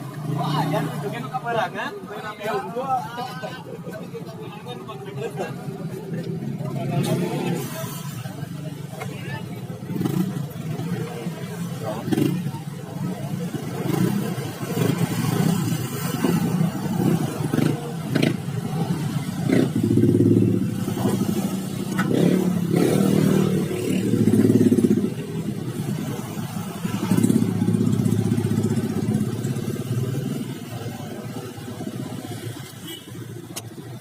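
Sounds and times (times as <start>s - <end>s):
engine revving: 6.6s - 8.2s, 9.8s - 32.5s.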